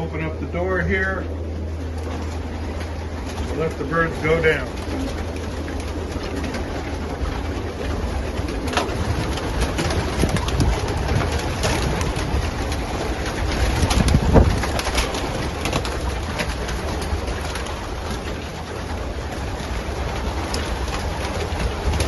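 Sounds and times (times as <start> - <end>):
pigeons cooing: 0.0 - 22.0
wing flaps and scuffles: 4.6 - 22.0.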